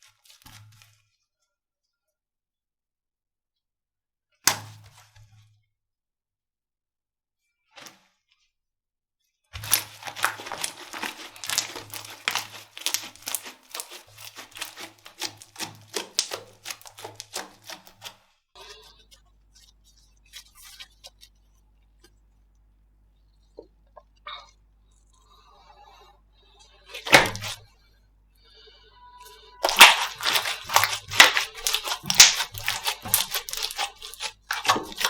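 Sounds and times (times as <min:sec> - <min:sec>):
slime squeezed sticky pops: 0:09.6 - 0:18.1, 0:27.0 - 0:27.6, 0:29.6 - 0:35.0.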